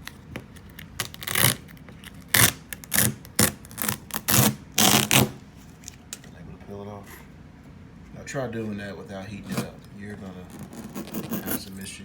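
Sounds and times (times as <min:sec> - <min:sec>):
vinyl decal tearing off: 0:00.0 - 0:06.0, 0:10.4 - 0:11.8.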